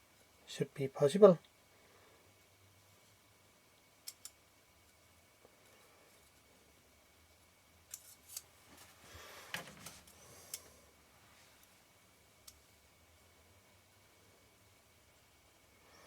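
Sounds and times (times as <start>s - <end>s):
small metal parts clicking: 4.0s - 4.4s.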